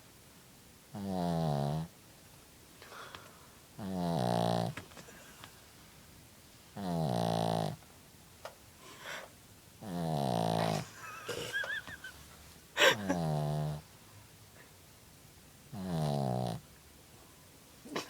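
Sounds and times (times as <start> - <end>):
dog snoring: 0.9 - 1.9, 3.8 - 4.8, 6.8 - 7.8, 9.8 - 11.0, 12.8 - 13.9, 15.7 - 16.7
dog snorting: 3.8 - 4.8, 6.8 - 7.8, 9.8 - 10.9, 12.8 - 13.8, 15.7 - 16.6.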